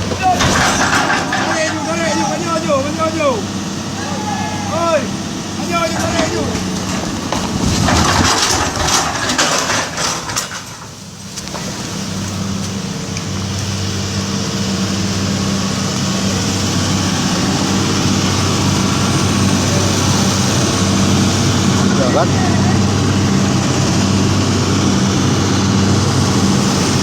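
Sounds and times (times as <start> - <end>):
clanking and knocking: 0.0 - 3.6, 5.6 - 11.8
excavator diesel engine: 0.0 - 27.0.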